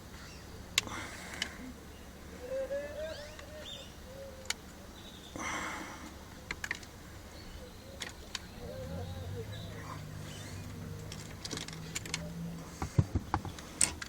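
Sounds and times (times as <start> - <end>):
birds chirping: 0.0 - 13.8
birds cooing: 0.2 - 6.5, 7.3 - 13.0
hand tools clicking and scraping: 10.2 - 14.0.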